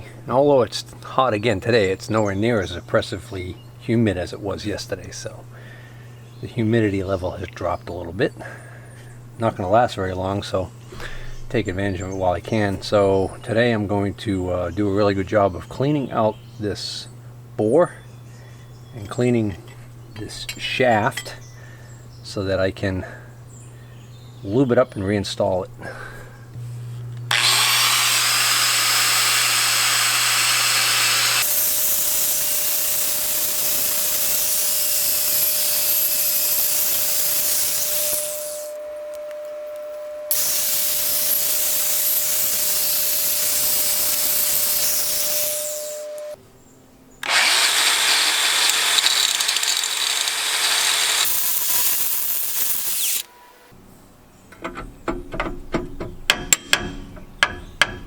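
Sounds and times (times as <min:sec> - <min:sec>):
handheld power tool running: 0:27.3 - 0:38.8, 0:40.3 - 0:46.4, 0:47.2 - 0:53.3.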